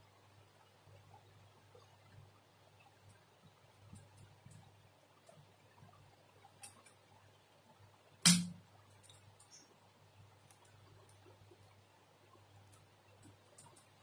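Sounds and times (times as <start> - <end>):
sharp knock with low ring: 8.3 - 8.6.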